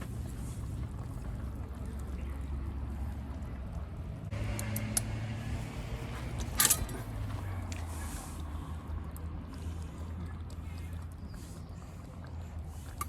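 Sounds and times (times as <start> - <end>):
light metallic clinks: 6.3 - 7.3.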